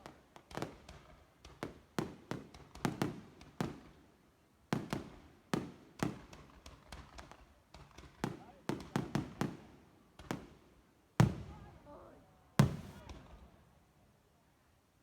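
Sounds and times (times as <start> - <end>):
fireworks bursting: 12.6 - 13.4.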